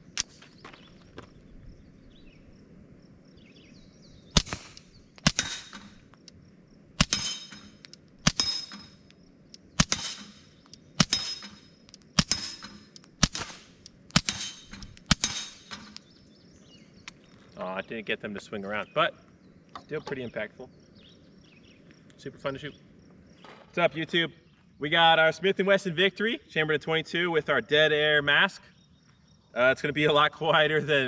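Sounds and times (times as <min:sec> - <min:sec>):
suppressed pistol shots: 0:04.3 - 0:06.1, 0:07.0 - 0:08.9, 0:09.6 - 0:16.0
bullet ringing on steel plate: 0:05.2 - 0:06.1, 0:07.0 - 0:09.1, 0:09.8 - 0:16.0.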